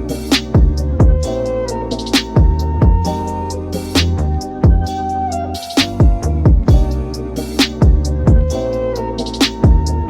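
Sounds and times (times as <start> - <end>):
ticking hi-hats: 0.0 - 10.0
bass drum hits: 0.5 - 1.3, 2.3 - 3.1, 4.1 - 4.9, 5.9 - 8.6.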